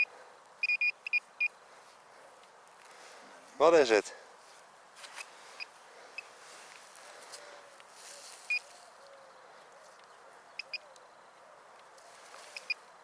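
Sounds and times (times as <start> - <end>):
metal detector beeps: 0.0 - 1.6, 10.6 - 10.8, 12.6 - 12.8.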